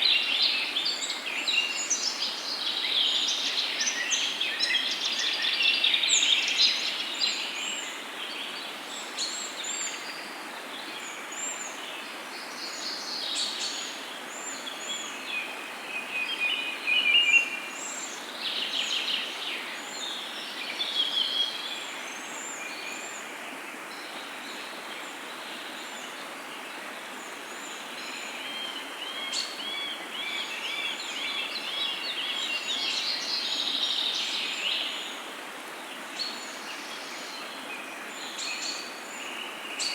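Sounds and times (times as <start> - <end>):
outdoor background hiss: 0.0 - 39.9.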